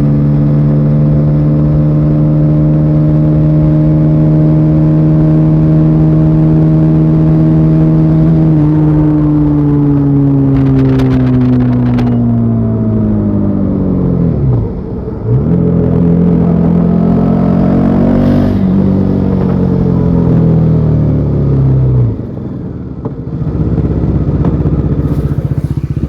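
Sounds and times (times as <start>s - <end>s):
motorcycle engine revving: 0.0s - 26.0s.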